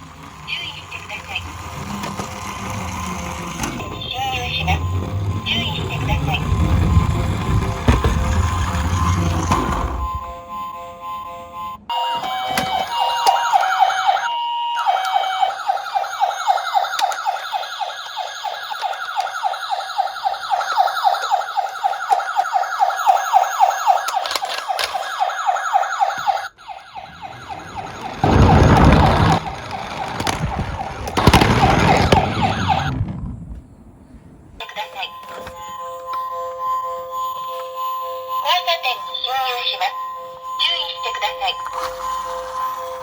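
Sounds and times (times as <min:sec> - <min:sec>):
toy cars rolling clatter: 0:00.0 - 0:10.3, 0:12.1 - 0:33.1, 0:40.9 - 0:43.0
toy electronic sirens: 0:00.0 - 0:33.1, 0:34.6 - 0:43.0.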